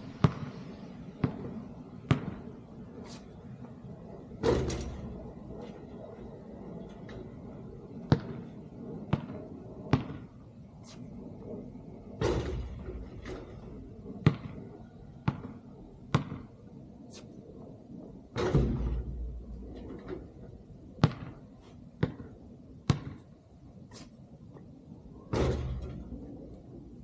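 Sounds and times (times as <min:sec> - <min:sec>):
basketball bouncing: 0:00.2 - 0:00.6, 0:01.2 - 0:02.5, 0:04.4 - 0:05.2, 0:08.0 - 0:10.4, 0:12.2 - 0:16.6, 0:18.3 - 0:20.4, 0:21.0 - 0:23.3, 0:25.3 - 0:26.1
basketball clattering: 0:04.4 - 0:05.4, 0:12.2 - 0:14.6, 0:18.3 - 0:21.4, 0:25.3 - 0:26.7.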